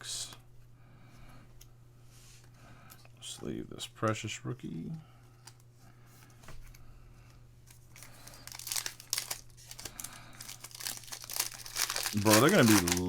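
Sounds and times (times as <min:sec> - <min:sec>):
card pack wrapper crinkling and tearing: 0:08.0 - 0:13.0.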